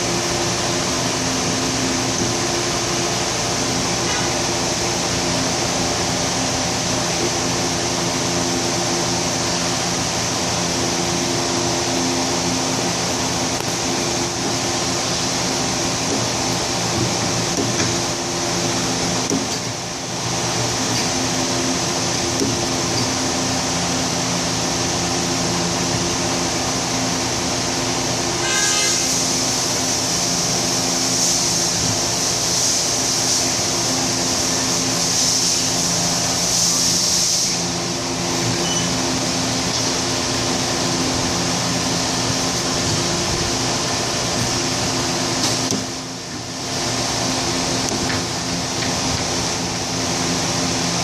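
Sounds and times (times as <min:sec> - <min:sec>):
road and tyre hiss: 0:19.8 - 0:51.0.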